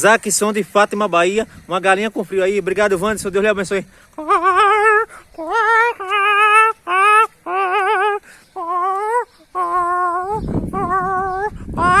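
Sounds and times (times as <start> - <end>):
man imitating hen calls: 4.2 - 12.0.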